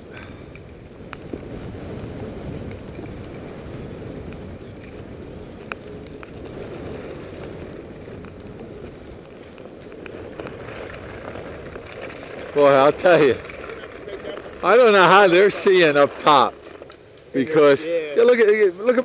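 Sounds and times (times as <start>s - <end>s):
wind rushing over microphone: 0.0s - 18.7s
faint ticks: 0.1s - 12.5s.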